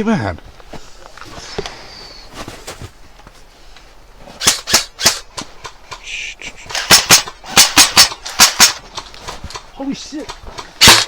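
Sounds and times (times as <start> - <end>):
airsoft gun sharp cracks: 4.4 - 6.1, 6.7 - 11.0.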